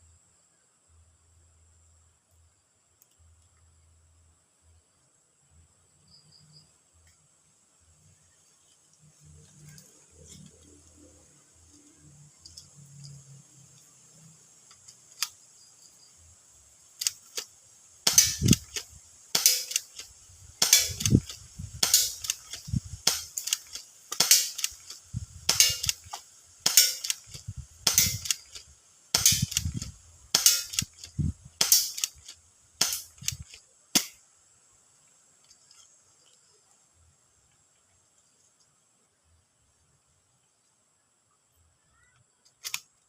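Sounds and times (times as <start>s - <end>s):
airsoft gun shots cracking: 17.0s - 34.2s.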